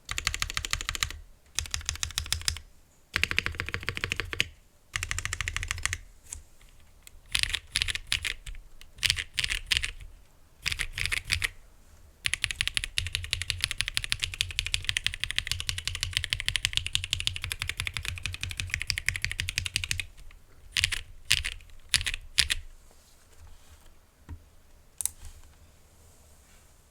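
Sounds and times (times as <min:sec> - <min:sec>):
mechanical keyboard typing: 0:00.1 - 0:02.6, 0:03.2 - 0:06.0, 0:06.7 - 0:11.6, 0:12.2 - 0:22.7.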